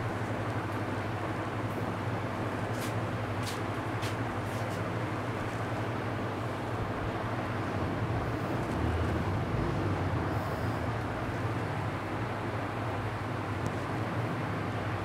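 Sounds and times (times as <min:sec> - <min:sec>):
low rumbling background noise: 0:00.0 - 0:15.0.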